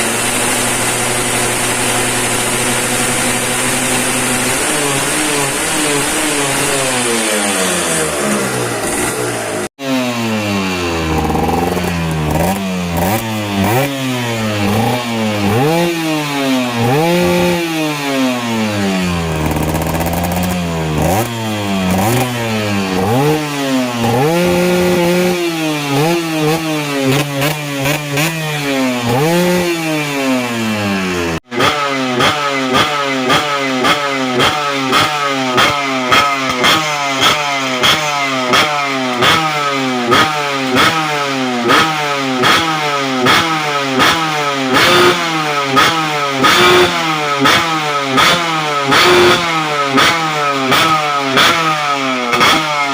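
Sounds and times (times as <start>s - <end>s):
two-stroke engine revving: 0.0s - 52.9s.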